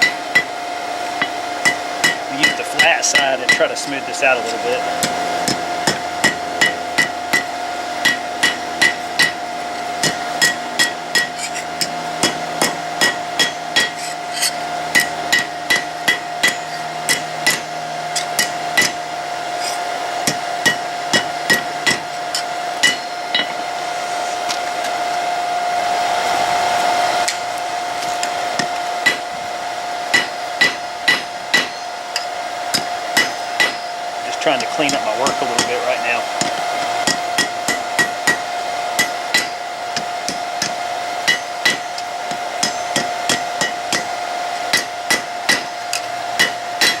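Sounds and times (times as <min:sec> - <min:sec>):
hammer striking steel on anvil: 0:00.0 - 0:00.5, 0:01.2 - 0:03.8, 0:04.4 - 0:19.0, 0:19.6 - 0:23.6, 0:28.6 - 0:29.3, 0:30.1 - 0:33.9, 0:34.6 - 0:35.8, 0:36.4 - 0:44.1, 0:44.7 - 0:47.0
steady hum: 0:00.0 - 0:47.0.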